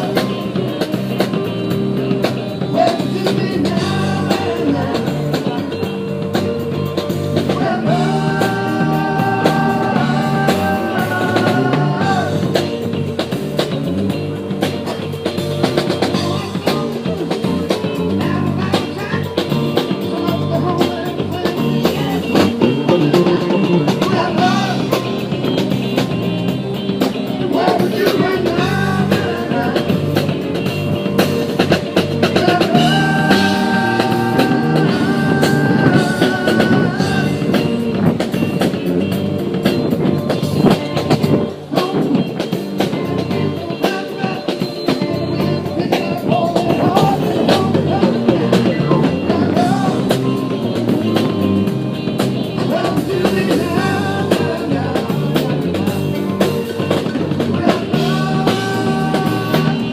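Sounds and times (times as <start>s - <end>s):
drum kit: 0.0s - 59.9s
guitar: 0.0s - 59.9s
rock music: 0.0s - 59.9s
person singing: 2.6s - 12.9s, 16.1s - 25.6s, 27.4s - 30.4s, 32.2s - 38.1s, 41.6s - 51.3s, 52.5s - 56.3s, 57.4s - 59.9s.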